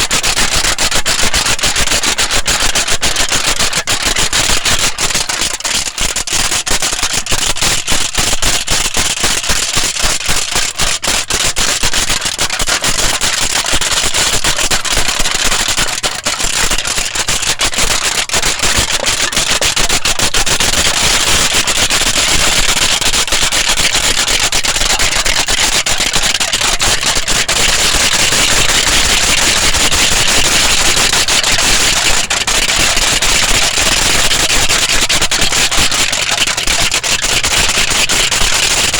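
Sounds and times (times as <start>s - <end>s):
aluminium foil crinkling: 15.8s - 38.9s.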